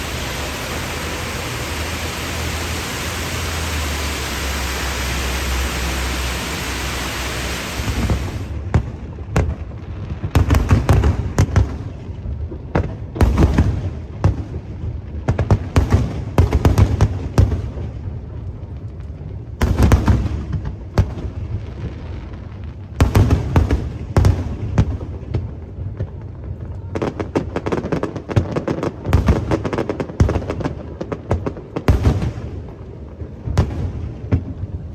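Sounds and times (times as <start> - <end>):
steady hiss: 0.0 - 8.7
fireworks bursting: 0.0 - 34.9.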